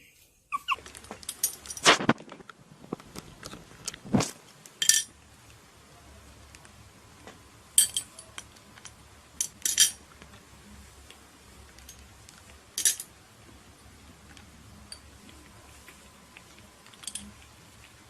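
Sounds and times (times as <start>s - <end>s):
small hard objects clinking: 12.7s - 13.1s, 16.9s - 17.4s.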